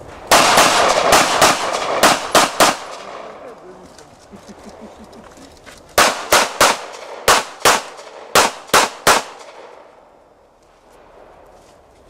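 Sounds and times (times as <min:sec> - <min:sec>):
handgun shots: 0:06.0 - 0:09.8.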